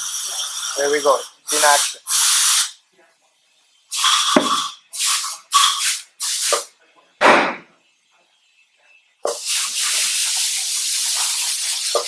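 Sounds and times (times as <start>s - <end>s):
compressed air hissing: 0.0s - 2.8s, 3.9s - 6.7s, 9.3s - 12.0s.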